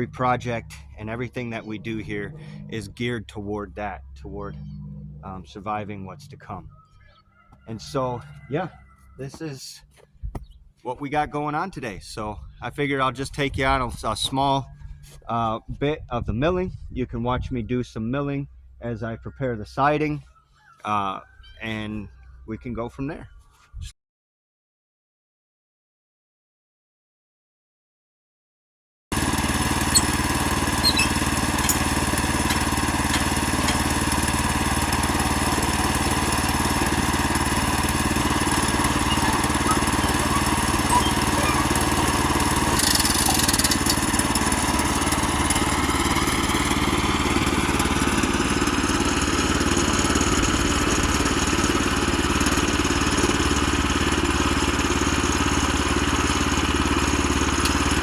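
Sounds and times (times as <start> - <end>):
band sawmill cutting a log: 0.0 - 6.5, 29.1 - 58.0
whining tone rising in pitch: 0.0 - 8.8, 35.2 - 46.3.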